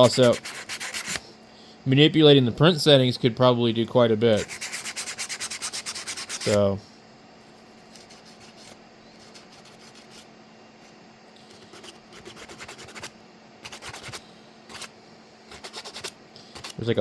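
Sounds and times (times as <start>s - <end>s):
sandpaper rubbing on plastic: 0.0s - 1.2s, 4.3s - 6.6s, 8.0s - 10.3s, 11.5s - 14.9s, 15.5s - 16.8s.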